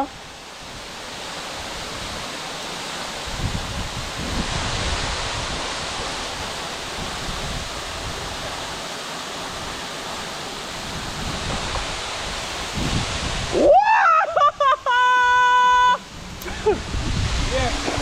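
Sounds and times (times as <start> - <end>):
waterfall rushing: 0.0 - 18.0
wind buffeting microphone: 3.2 - 8.6, 10.8 - 13.8, 16.1 - 18.0.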